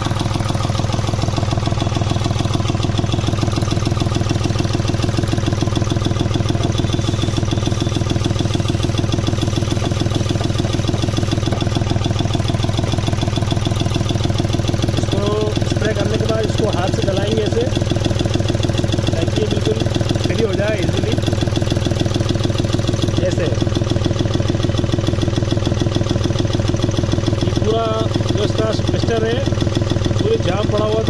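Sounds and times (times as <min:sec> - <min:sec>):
engine idling: 0:00.0 - 0:31.0.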